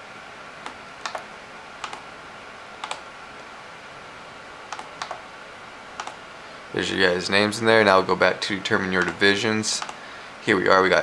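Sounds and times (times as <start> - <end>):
computer keyboard clicks: 0.6 - 2.0, 2.8 - 3.0, 4.7 - 5.2, 6.0 - 6.2, 9.8 - 10.0.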